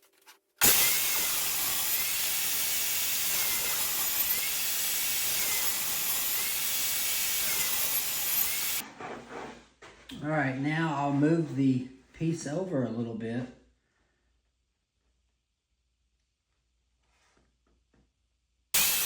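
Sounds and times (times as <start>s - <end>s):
table saw cutting wood: 0.6s - 8.8s, 18.8s - 19.0s.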